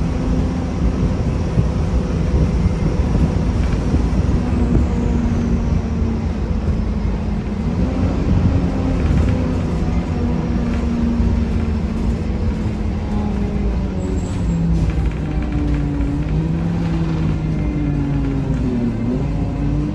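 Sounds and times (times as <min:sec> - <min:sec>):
bus engine rumbling: 0:00.0 - 0:19.9.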